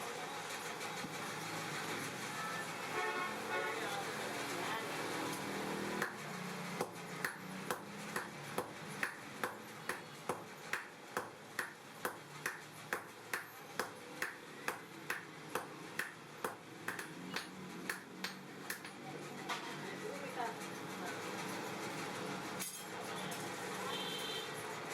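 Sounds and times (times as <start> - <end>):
hammer striking steel on anvil: 6.8 - 18.9.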